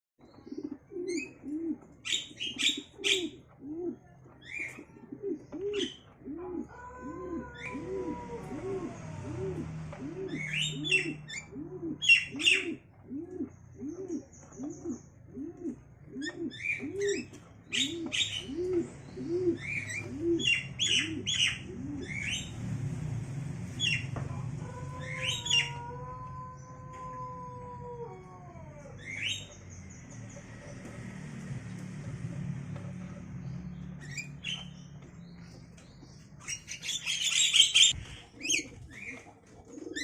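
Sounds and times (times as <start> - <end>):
pigeons cooing: 0.2 - 40.0
drawn-out whine: 6.6 - 13.8, 15.0 - 39.6
mynas harsh chirping calls: 10.2 - 12.8, 16.1 - 22.6, 24.8 - 27.3, 28.9 - 30.3, 34.0 - 39.2.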